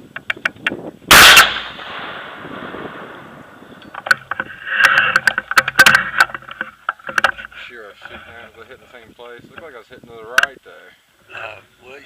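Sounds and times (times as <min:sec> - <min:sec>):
crackling rustle: 0:00.2 - 0:12.0
rifle shot: 0:01.1 - 0:03.6.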